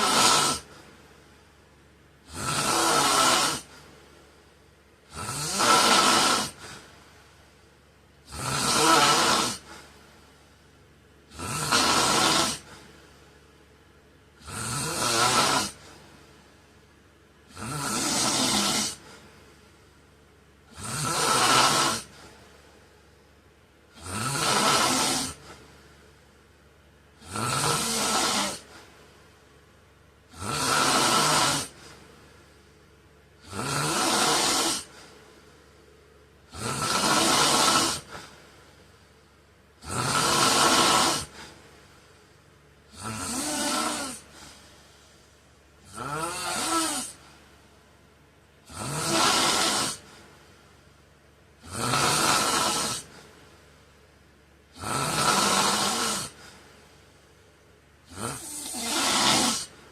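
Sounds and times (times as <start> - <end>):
man snoring: 0.0 - 0.8, 2.2 - 3.9, 5.0 - 6.9, 8.2 - 10.0, 11.2 - 12.9, 14.4 - 16.1, 17.5 - 19.3, 20.7 - 22.5, 23.9 - 25.6, 27.2 - 28.9, 30.3 - 32.1, 33.4 - 35.2, 36.5 - 38.4, 39.8 - 42.0, 42.9 - 44.7, 45.8 - 47.3, 48.6 - 50.2, 51.6 - 53.3, 54.7 - 56.6, 58.0 - 59.9
quiet breathing: 6.0 - 8.4, 9.4 - 14.5, 15.7 - 20.8, 22.0 - 30.3, 31.2 - 33.4, 34.0 - 45.9, 46.5 - 51.6, 52.4 - 54.7, 55.4 - 59.9.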